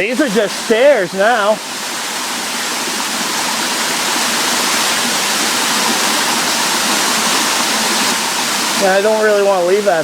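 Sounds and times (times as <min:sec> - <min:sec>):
waterfall roaring: 0:00.0 - 0:10.0.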